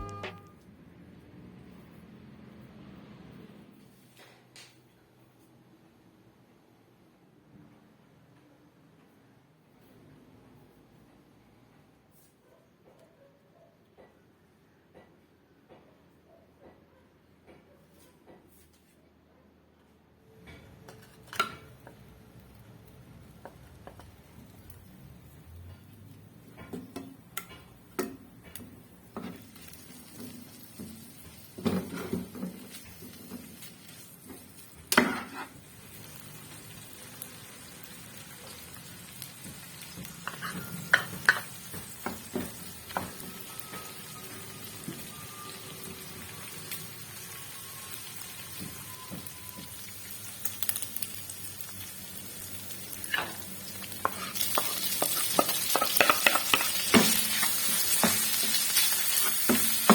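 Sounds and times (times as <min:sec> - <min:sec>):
food sizzling in a pan: 0:29.0 - 0:59.9
utensils clinking on cookware: 0:40.2 - 0:44.3, 0:53.0 - 0:59.9.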